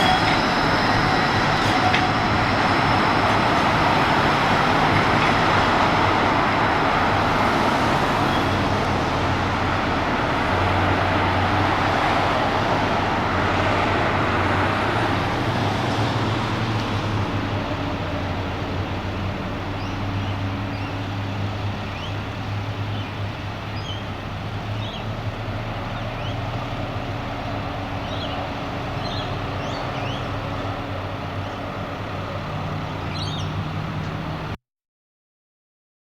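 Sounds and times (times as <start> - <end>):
road traffic drone: 0.0 - 34.6
small birds chirping: 22.9 - 24.1, 24.8 - 25.1, 28.0 - 30.3, 33.0 - 34.2.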